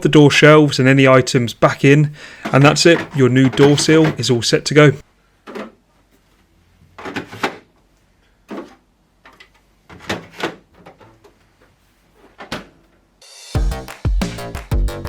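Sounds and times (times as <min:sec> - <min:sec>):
plastic shelves knocking: 0:02.4 - 0:04.8, 0:06.9 - 0:07.8, 0:08.5 - 0:11.4.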